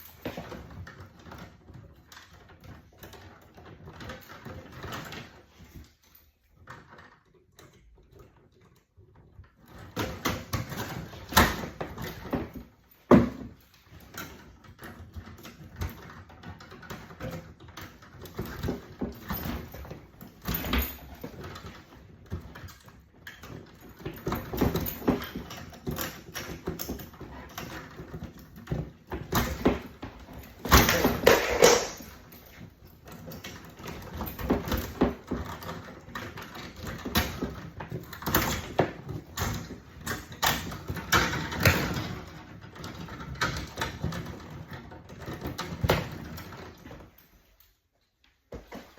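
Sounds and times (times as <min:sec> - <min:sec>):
knocks and clunks: 0:09.7 - 0:22.7.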